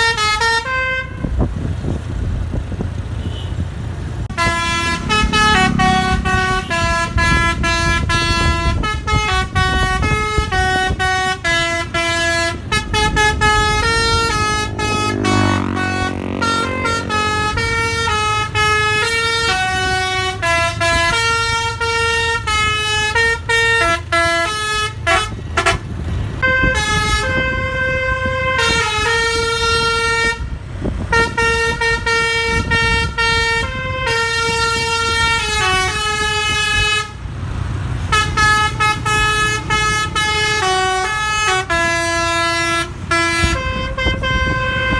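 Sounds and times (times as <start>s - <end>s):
bus air horn melody: 0.0s - 1.5s, 3.2s - 3.6s, 4.3s - 37.3s, 38.0s - 44.9s
low rumble: 12.6s - 18.5s.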